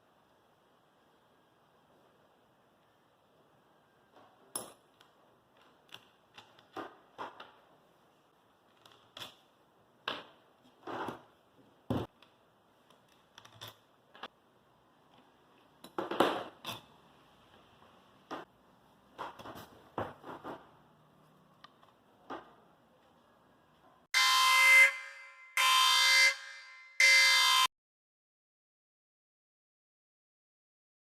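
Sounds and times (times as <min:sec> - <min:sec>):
knocks and scraping: 0:18.2 - 0:20.9.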